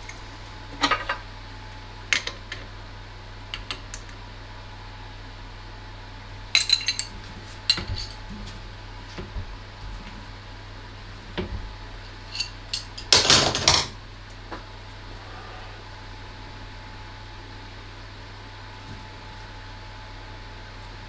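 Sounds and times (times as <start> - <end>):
steady low hum: 0.0 - 21.0
metal parts and tools clinking: 6.6 - 7.1.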